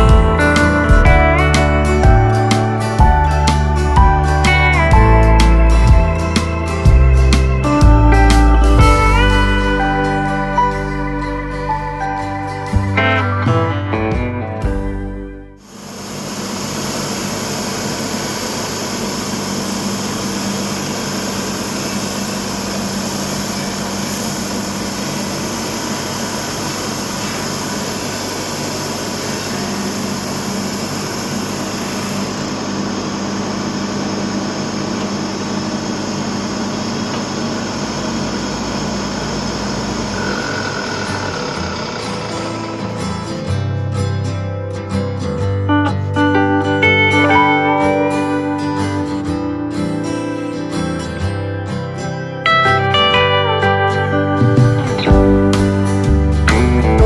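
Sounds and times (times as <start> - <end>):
drum sander motor humming: 15.6 - 43.5.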